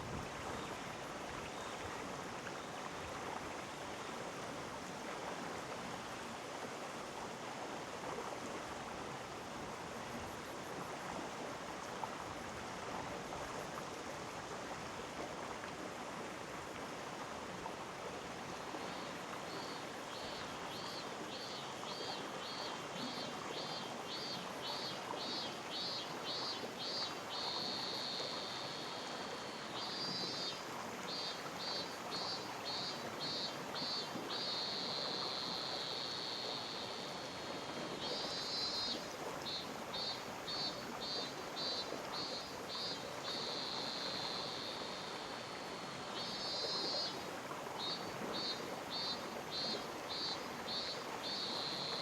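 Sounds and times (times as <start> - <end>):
stream water rushing: 11.1 - 52.0.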